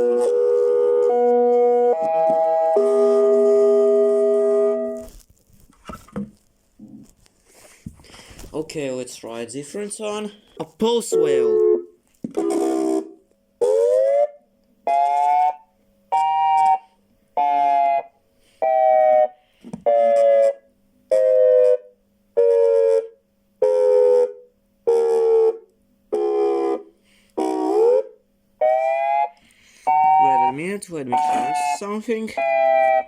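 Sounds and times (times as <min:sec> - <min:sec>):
electronic siren pulsed wail: 0:00.0 - 0:05.1, 0:11.2 - 0:25.6, 0:26.2 - 0:26.8, 0:27.4 - 0:33.0.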